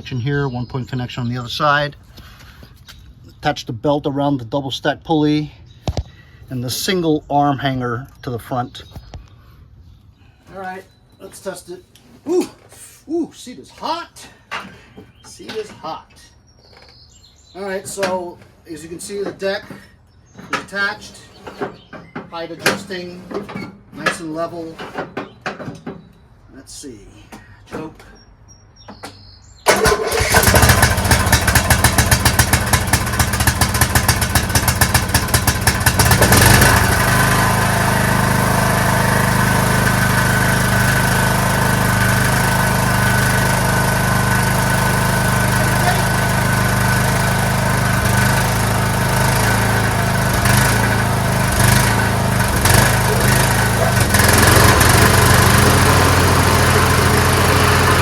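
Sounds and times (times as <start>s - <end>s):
lawn tractor engine running: 29.6s - 58.0s.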